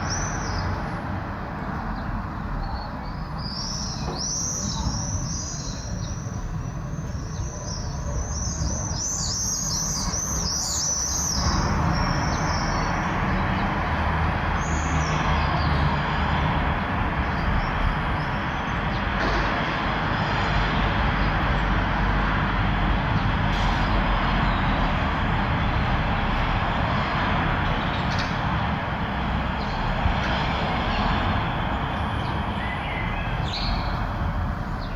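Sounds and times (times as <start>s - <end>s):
road traffic rumble: 0.0s - 34.9s
small birds chirping: 2.0s - 15.8s, 29.5s - 34.9s.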